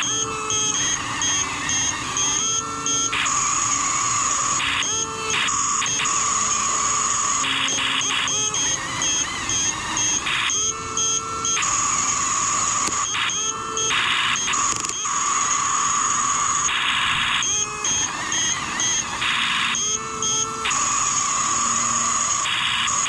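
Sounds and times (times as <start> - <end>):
high electronic whine: 0.0 - 23.0
noisy mechanical hum: 0.0 - 23.0.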